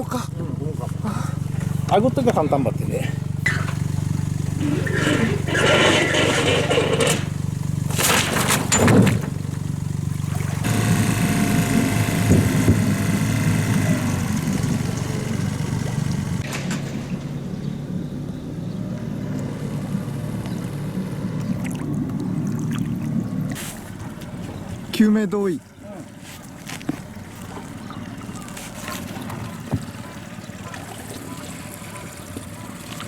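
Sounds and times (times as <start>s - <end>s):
engine running with low drone: 0.0s - 33.0s
sharp knocks: 10.4s - 13.7s.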